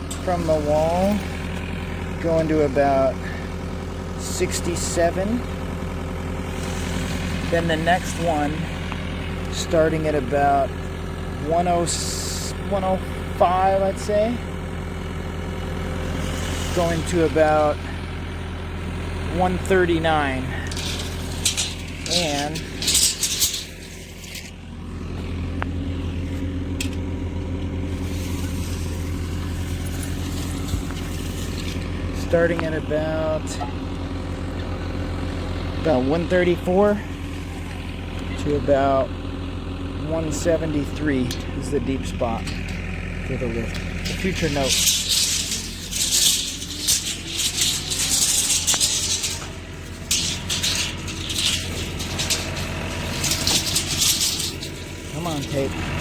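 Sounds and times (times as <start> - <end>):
scraping rattle: 0.0 - 3.5, 6.1 - 10.7, 15.6 - 34.4, 40.1 - 56.0
truck diesel engine running: 0.0 - 56.0.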